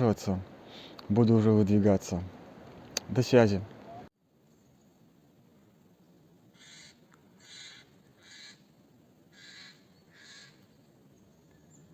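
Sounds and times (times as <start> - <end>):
faint bird calls: 6.5 - 8.7, 9.3 - 11.9.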